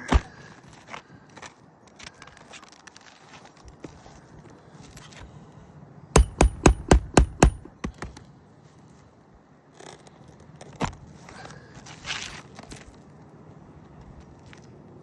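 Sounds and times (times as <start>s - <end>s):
hatchet striking metal: 6.2s - 8.0s.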